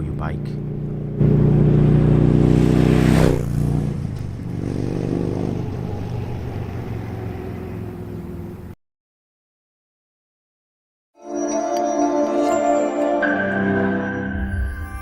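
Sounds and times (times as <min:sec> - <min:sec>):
motorcycle engine revving and idling: 0:00.0 - 0:08.8.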